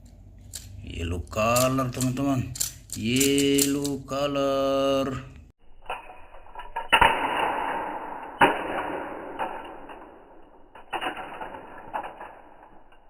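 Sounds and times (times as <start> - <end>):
toy cars clacking: 0.0 - 4.2.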